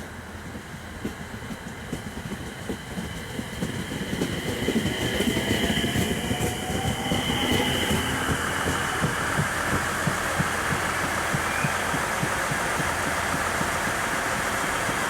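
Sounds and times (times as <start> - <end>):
hiss: 3.0 - 15.0
diesel railcar engine idling: 6.4 - 15.0.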